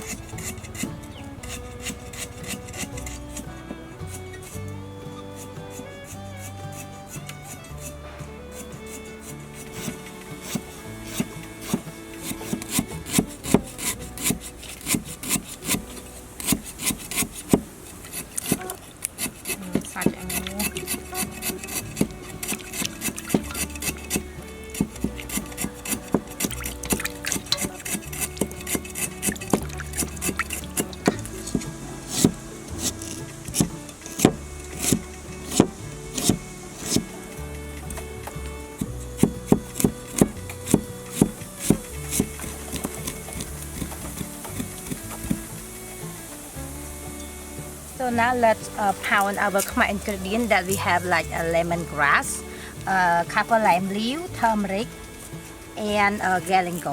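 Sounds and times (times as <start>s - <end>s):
background music: 0.0s - 56.9s
scraping on wood: 0.0s - 56.9s
knife chopping on wooden board: 24.8s - 37.1s, 39.2s - 45.4s.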